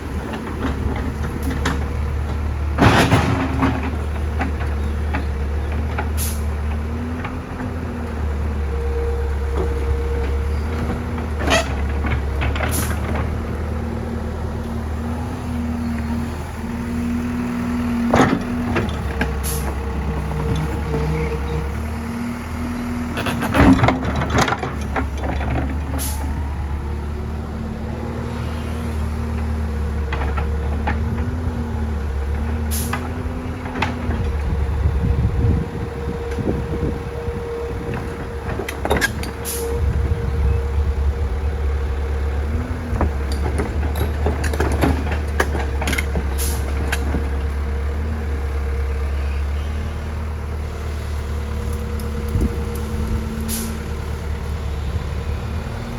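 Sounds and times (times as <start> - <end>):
heavy diesel machinery running: 0.0 - 55.9
metallic clanks and knocks: 0.3 - 7.4.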